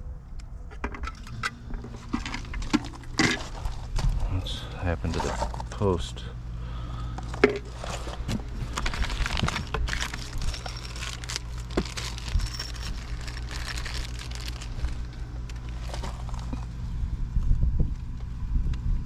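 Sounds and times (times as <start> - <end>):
steady low hum: 0.0 - 19.0
rustling scrapes: 5.0 - 5.8, 7.7 - 16.7.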